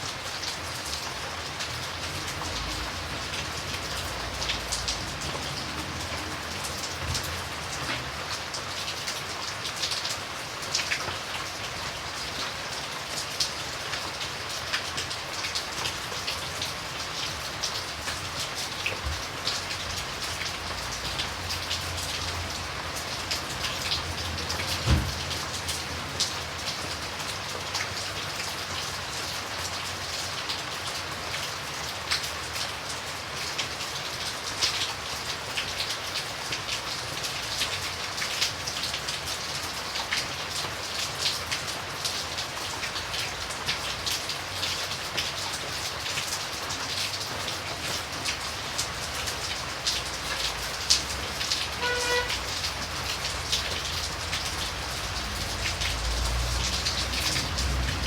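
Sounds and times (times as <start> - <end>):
raindrops ticking close by: 0.0 - 58.0
steady rain falling: 0.0 - 58.0
low thump: 24.8 - 25.2.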